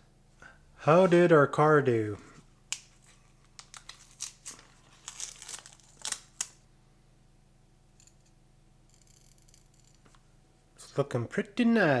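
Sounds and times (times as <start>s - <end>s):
masking tape peeling: 3.7s - 6.6s.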